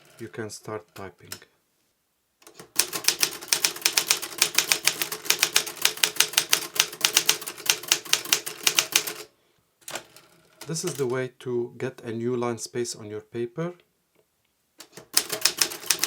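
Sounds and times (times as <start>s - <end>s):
manual typewriter key strikes: 15.1s - 16.0s.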